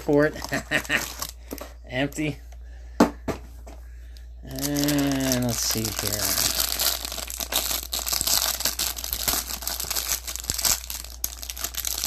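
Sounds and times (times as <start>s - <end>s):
card packaging crinkling and tearing: 0.0s - 1.6s, 4.5s - 12.0s.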